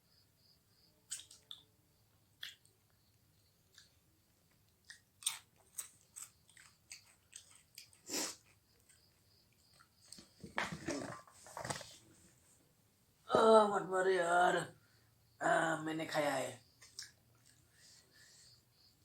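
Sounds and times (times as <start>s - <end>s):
person chewing crunchy food: 2.4s - 11.8s.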